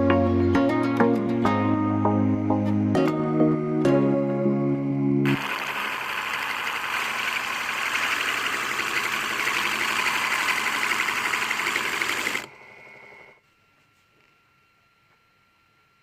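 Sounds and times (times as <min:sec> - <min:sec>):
small motor rattling: 0:05.3 - 0:13.3.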